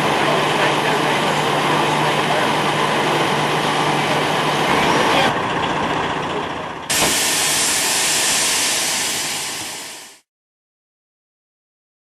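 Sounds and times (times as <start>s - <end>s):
hissing street noise: 0.0s - 5.6s, 6.2s - 10.3s.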